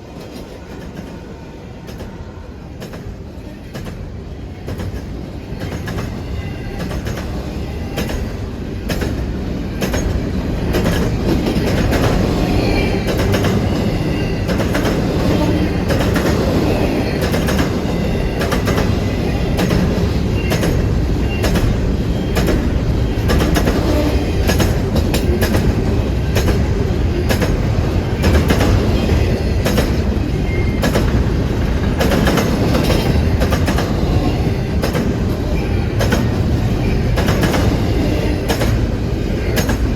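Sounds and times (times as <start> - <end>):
freight train rumbling past: 0.0 - 39.9
wheels clicking over rail joints: 8.8 - 39.9.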